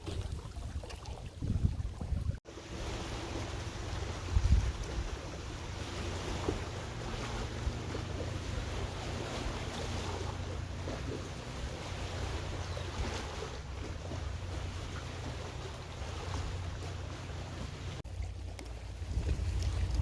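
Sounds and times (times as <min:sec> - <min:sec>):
wind buffeting microphone: 0:00.0 - 0:02.4, 0:04.1 - 0:05.6, 0:18.1 - 0:20.0.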